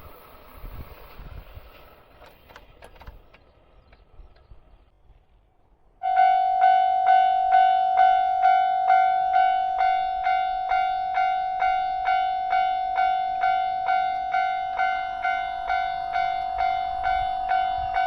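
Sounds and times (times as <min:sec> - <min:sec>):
wheels clicking over rail joints: 0:00.0 - 0:05.5
train passing: 0:00.0 - 0:18.0
level crossing warning bell: 0:06.0 - 0:18.0.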